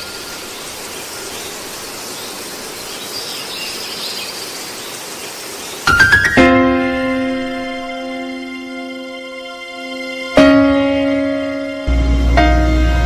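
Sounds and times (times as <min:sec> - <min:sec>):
outdoor hiss: 0:00.0 - 0:10.4
music with rising notes: 0:05.9 - 0:13.0.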